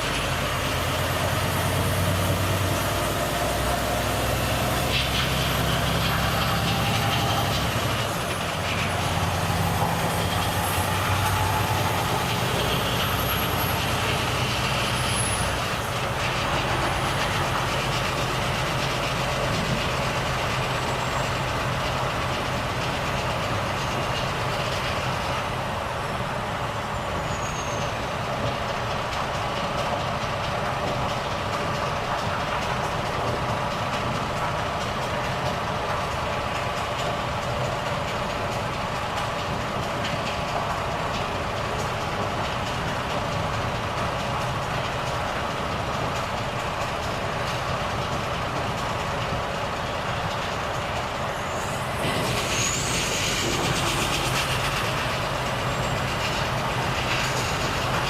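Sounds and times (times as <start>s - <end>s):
hiss: 0.0s - 58.0s
truck diesel engine running: 0.0s - 58.0s.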